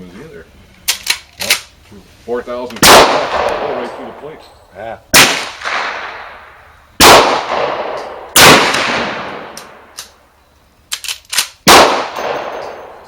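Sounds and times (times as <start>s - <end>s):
gunshots with long echo: 2.8s - 4.2s, 5.1s - 10.0s, 11.6s - 13.0s
quick metallic clicks: 10.9s - 11.6s.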